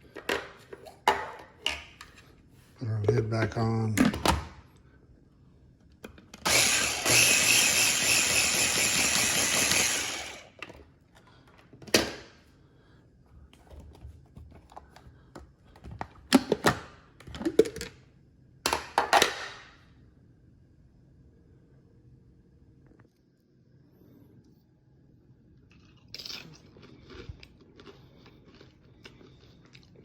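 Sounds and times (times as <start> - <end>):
blender motor running: 6.4 - 10.6.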